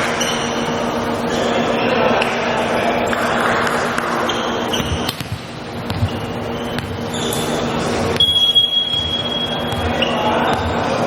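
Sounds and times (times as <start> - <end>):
crowd noise: 0.0 - 11.0
shoe squeaks on court: 0.1 - 0.7, 4.0 - 11.0
ball hits on court: 4.8 - 6.2.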